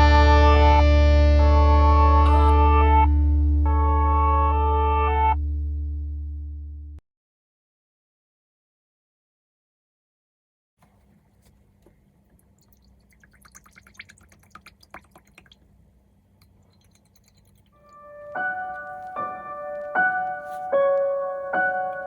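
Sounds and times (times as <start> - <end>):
soft piano music: 17.8 - 22.0.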